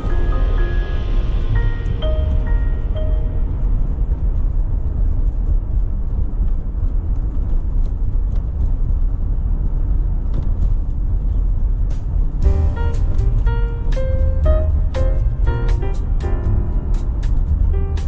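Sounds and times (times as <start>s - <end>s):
musical notes: 0.0s - 4.3s, 11.9s - 18.0s
car driving rumble: 11.6s - 18.0s.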